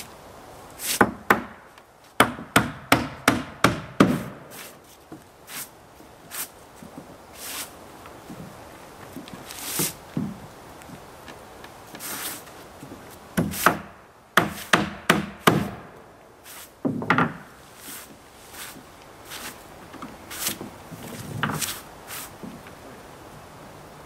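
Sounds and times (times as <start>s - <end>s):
hammer knocking on wood: 2.2s - 4.4s, 13.4s - 15.8s
wood scraping and rubbing: 4.1s - 13.9s, 16.5s - 22.8s.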